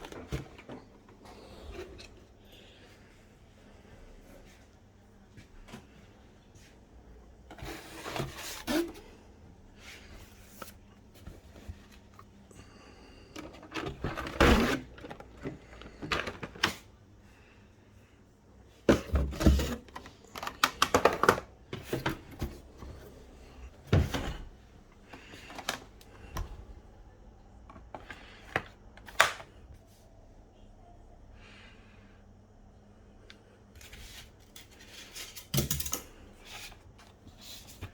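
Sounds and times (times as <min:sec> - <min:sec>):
plastic parts clicking and knocking: 0:13.3 - 0:16.9, 0:18.9 - 0:22.5, 0:35.3 - 0:36.1.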